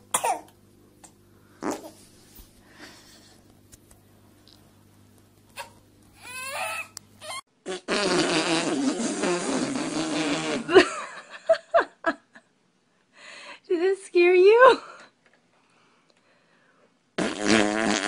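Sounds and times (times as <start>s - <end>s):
long loud fart noise: 1.5s - 2.0s, 7.6s - 10.8s, 17.2s - 18.0s.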